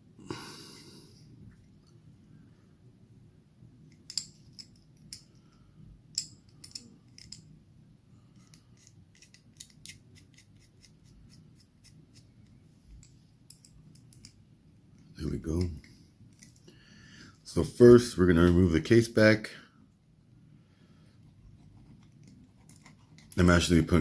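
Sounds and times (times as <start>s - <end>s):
metallic clicks of watch tools: 3.9s - 7.5s, 8.3s - 14.4s.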